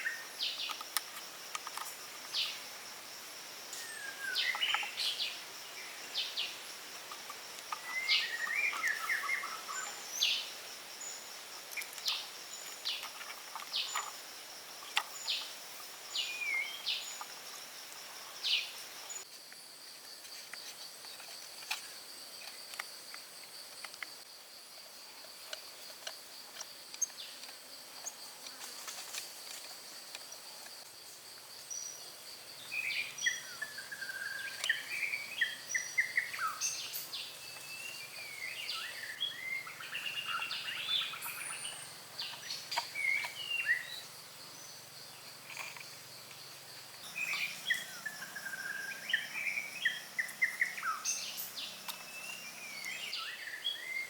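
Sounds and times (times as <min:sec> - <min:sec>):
insect drone: 0:00.0 - 0:54.0
birds chirping: 0:03.8 - 0:14.2, 0:32.6 - 0:54.0.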